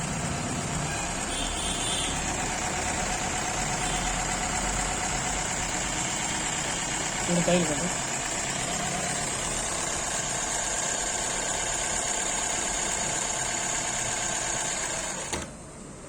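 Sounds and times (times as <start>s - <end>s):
sewing machine running: 0.0s - 15.5s.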